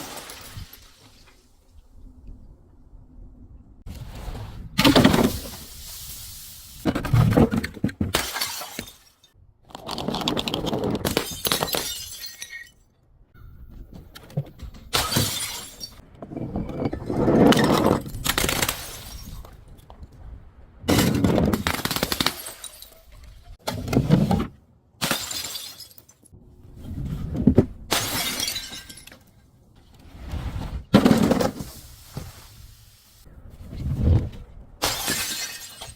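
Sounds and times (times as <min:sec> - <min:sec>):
glass bottles shattering: 0:00.0 - 0:01.0, 0:08.1 - 0:09.4, 0:11.0 - 0:12.8, 0:14.9 - 0:16.0, 0:20.9 - 0:23.2, 0:25.0 - 0:26.3, 0:27.9 - 0:29.3, 0:34.8 - 0:35.9.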